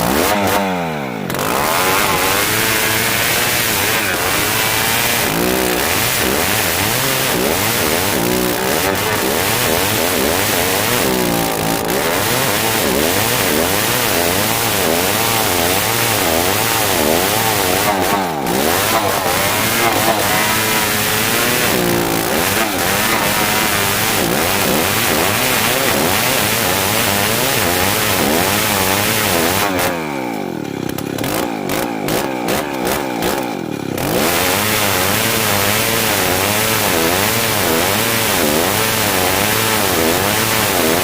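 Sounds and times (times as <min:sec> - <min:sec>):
chainsaw cutting wood: 0:00.0 - 0:41.0.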